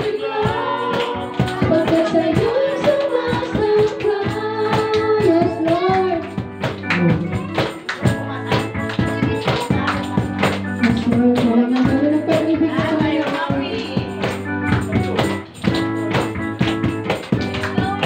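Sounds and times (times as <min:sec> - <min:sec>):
person singing: 0:00.0 - 0:06.2
keyboard and bass chords: 0:00.0 - 0:18.0
tambourine and drum beat: 0:00.0 - 0:18.0.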